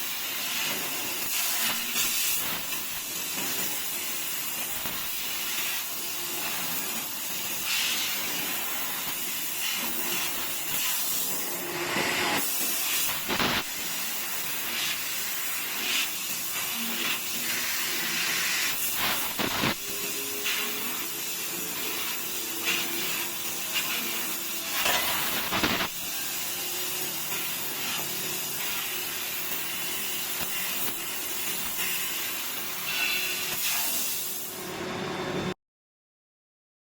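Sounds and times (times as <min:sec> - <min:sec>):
laser cutter hissing: 0:00.0 - 0:34.8.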